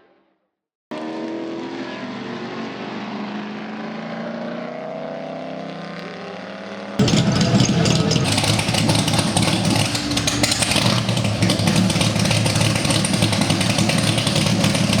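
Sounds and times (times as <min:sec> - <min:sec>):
race car engine running: 0:05.9 - 0:15.0.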